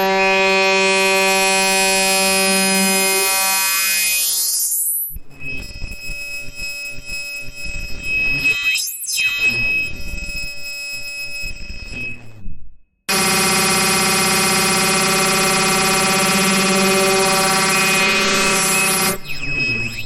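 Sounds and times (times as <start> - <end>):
dense electronic notes: 0.0 - 4.0, 13.1 - 19.6
loud dense synthesizer chord: 13.1 - 19.2
steady high tone: 13.1 - 19.4
rising and falling pitch sweep: 13.1 - 19.8.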